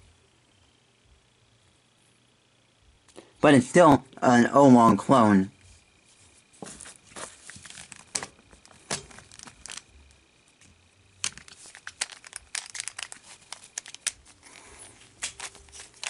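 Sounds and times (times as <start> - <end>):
hard plastic crinkling: 6.4 - 16.0.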